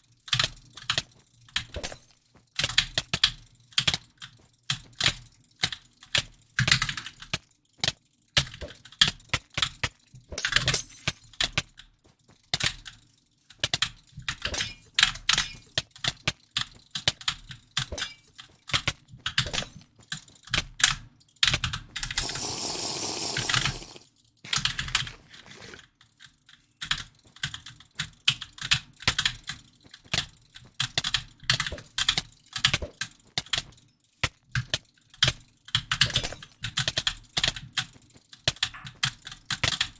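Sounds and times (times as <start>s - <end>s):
steady hiss: 22.2s - 24.0s.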